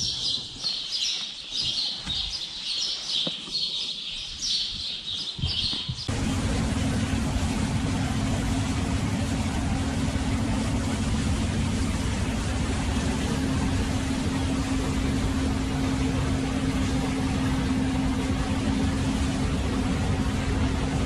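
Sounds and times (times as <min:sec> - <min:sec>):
tractor engine humming: 0:06.1 - 0:21.0.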